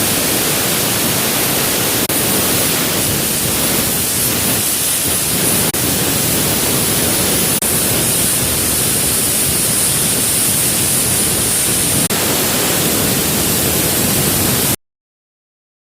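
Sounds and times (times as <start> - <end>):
plasma torch hissing: 0.0 - 14.8.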